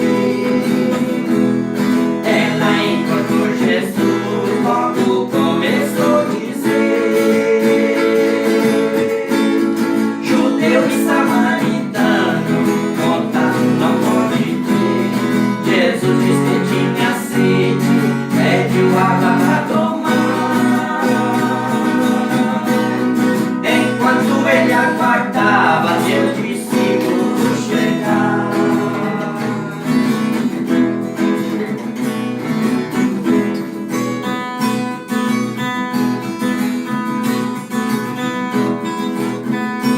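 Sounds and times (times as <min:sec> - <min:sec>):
acoustic guitar strumming: 0:00.0 - 0:39.9.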